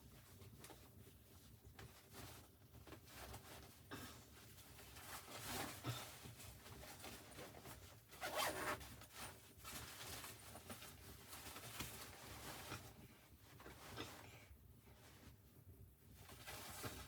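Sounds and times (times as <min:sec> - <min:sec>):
rasping and rustling handling: 0:00.2 - 0:15.4.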